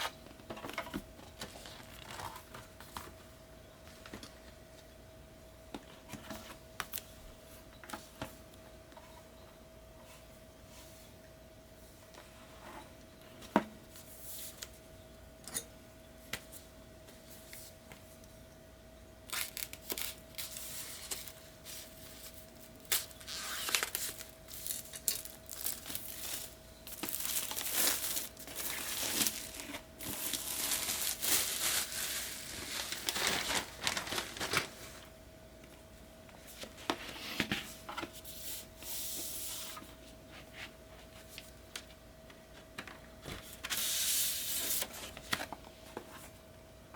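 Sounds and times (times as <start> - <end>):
packaging tearing and crinkling: 19.3 - 21.3, 22.8 - 34.8.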